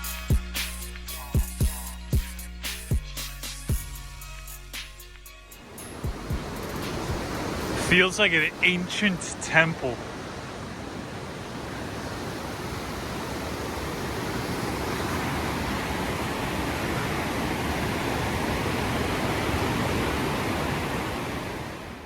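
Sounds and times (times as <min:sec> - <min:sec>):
waterfall rushing: 0:05.6 - 0:22.0.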